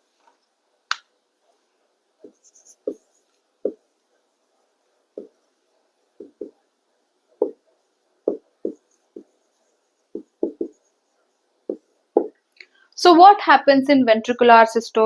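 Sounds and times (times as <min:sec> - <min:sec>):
pen tapping and stroking on hard surface: 0:02.2 - 0:03.8, 0:05.2 - 0:05.4, 0:06.2 - 0:06.6, 0:07.4 - 0:07.6, 0:08.2 - 0:09.4, 0:10.1 - 0:10.8, 0:11.7 - 0:12.4.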